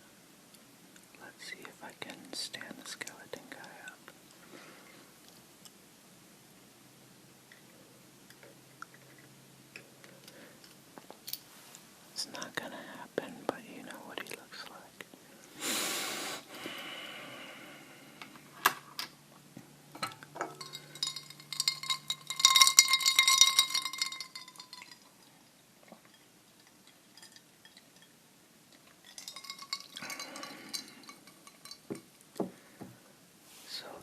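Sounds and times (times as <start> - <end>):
clinking clatter with metallic ring: 20.0 - 25.4, 26.0 - 32.1.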